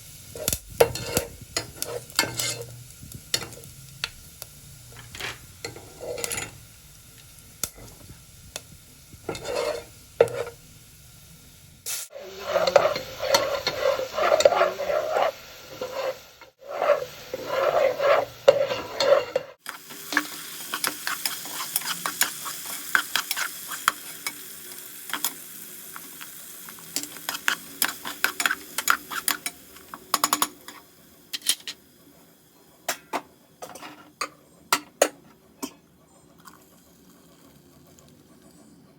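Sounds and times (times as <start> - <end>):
food sizzling in pan: 0.0 - 34.1
utensil stirring and scraping pan: 0.2 - 6.7, 7.6 - 10.7, 12.1 - 30.8, 33.6 - 35.8.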